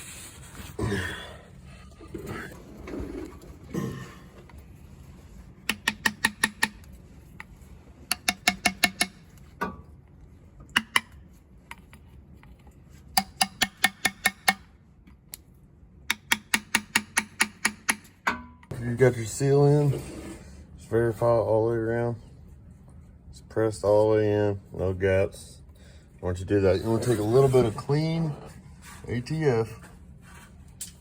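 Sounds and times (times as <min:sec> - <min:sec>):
hammer tapping: 0:05.7 - 0:06.8, 0:08.1 - 0:09.8, 0:10.8 - 0:11.2, 0:13.2 - 0:14.7, 0:16.1 - 0:18.7.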